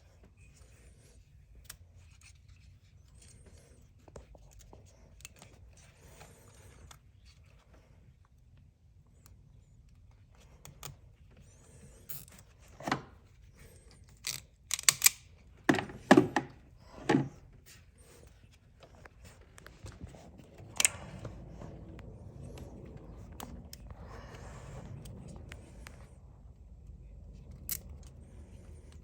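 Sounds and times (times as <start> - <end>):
tools and parts knocking: 15.7 - 17.3.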